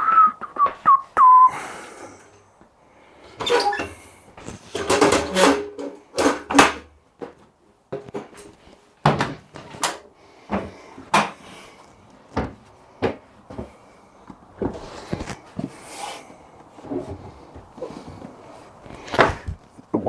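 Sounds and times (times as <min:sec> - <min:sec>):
hard parts knocking and clattering: 0:03.4 - 0:07.0, 0:07.9 - 0:10.0.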